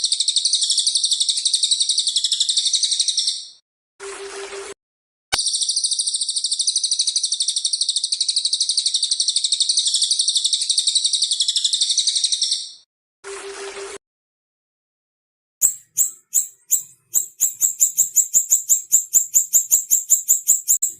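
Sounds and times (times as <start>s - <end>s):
songbird high-pitched trill: 5.4s - 8.8s, 15.6s - 20.9s.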